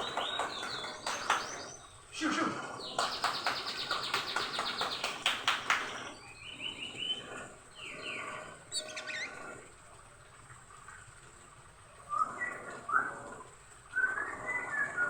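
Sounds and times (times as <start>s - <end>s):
bird whistling song: 0.0s - 2.1s, 2.8s - 9.6s, 12.1s - 13.2s, 13.9s - 15.0s
bird chattering: 2.8s - 9.7s.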